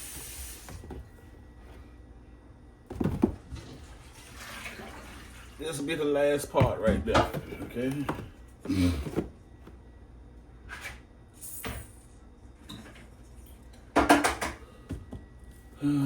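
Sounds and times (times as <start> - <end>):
containers clattering: 6.4 - 9.3.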